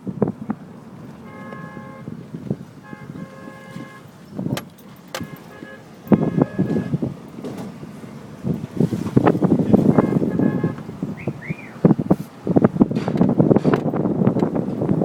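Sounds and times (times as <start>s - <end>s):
wind gusting against microphone: 0.0s - 15.0s
vehicle horn blasts: 1.2s - 2.2s, 2.8s - 4.2s, 5.1s - 7.1s, 9.7s - 11.8s.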